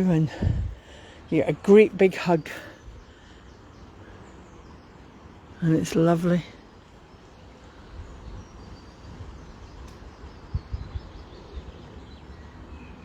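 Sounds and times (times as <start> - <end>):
wind rumble on microphone: 0.2 - 0.8, 7.8 - 13.0
faint bird chirps: 2.3 - 13.0.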